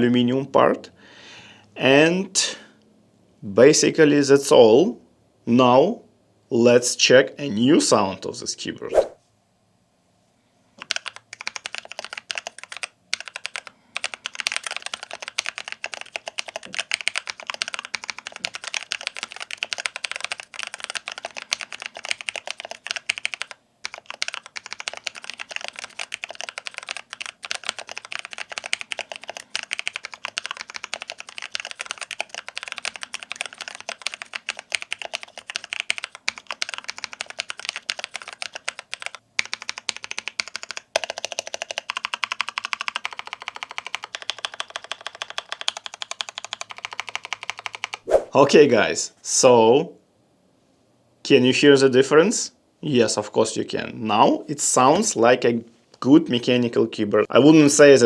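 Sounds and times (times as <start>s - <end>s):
mechanical keyboard typing: 10.8s - 48.0s.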